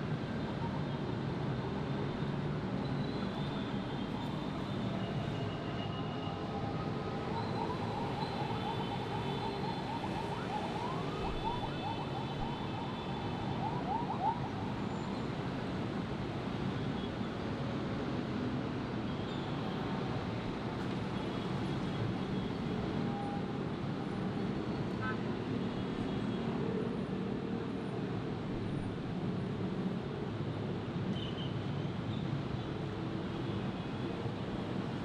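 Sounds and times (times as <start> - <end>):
dense city traffic: 0.0 - 35.0
siren warbling: 7.0 - 14.7.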